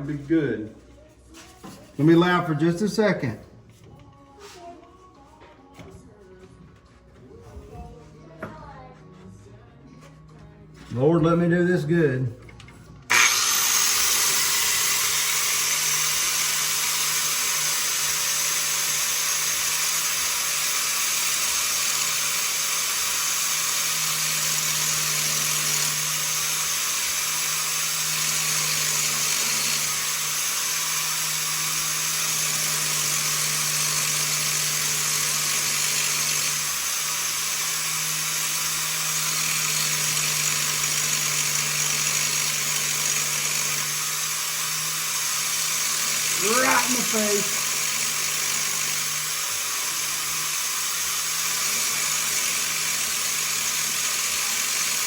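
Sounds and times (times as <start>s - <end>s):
grinder grinding metal: 13.0s - 55.0s.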